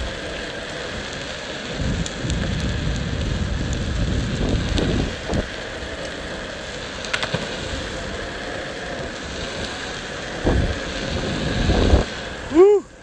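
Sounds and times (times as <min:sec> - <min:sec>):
skateboard rolling over pavement: 0:00.0 - 0:13.0
wheels clicking over bumps: 0:00.0 - 0:13.0.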